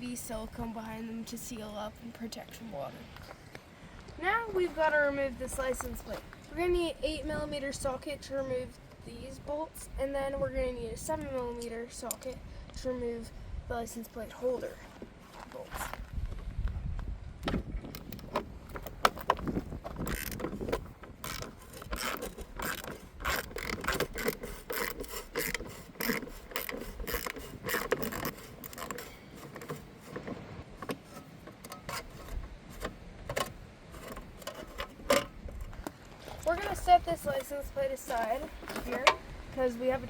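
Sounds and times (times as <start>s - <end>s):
socket ratchet clicking: 21.2s - 29.8s.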